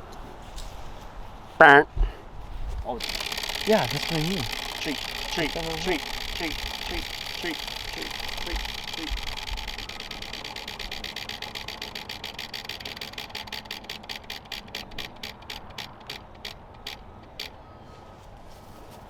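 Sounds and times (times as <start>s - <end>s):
prize wheel pointer clicking: 2.9s - 17.6s.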